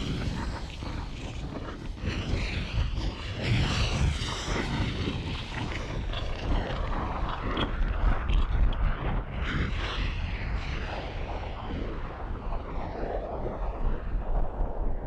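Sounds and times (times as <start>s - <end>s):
crackles and pops: 0.0s - 9.7s
deep volcanic rumble: 0.0s - 15.0s.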